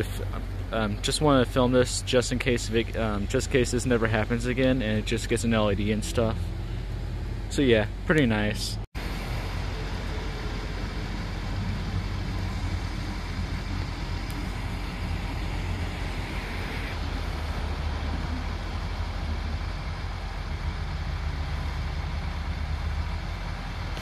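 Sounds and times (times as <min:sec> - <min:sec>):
road noise hiss: 0:00.0 - 0:24.0
vehicle rumble: 0:00.0 - 0:24.0.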